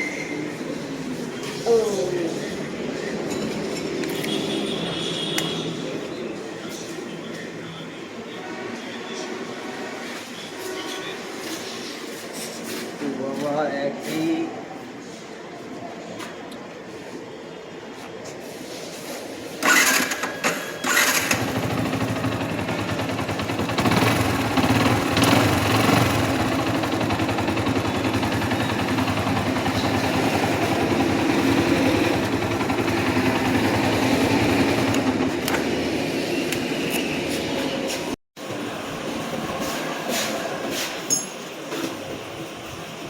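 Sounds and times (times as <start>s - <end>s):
loud engine bursts: 19.6s - 35.4s
motorcycle engine clattering: 19.6s - 35.7s.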